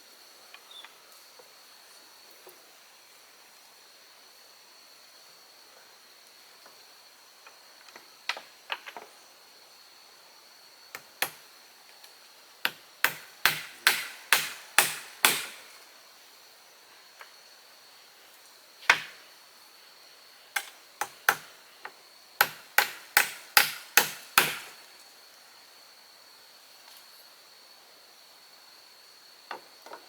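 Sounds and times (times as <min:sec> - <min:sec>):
tool chopping into wood: 0:12.6 - 0:15.8, 0:18.9 - 0:19.2, 0:20.6 - 0:21.5, 0:22.4 - 0:24.8.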